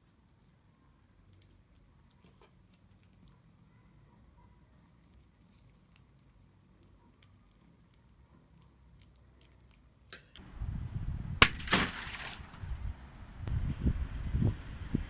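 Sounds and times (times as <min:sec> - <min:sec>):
low rumbling handling noise: 0:10.4 - 0:15.0.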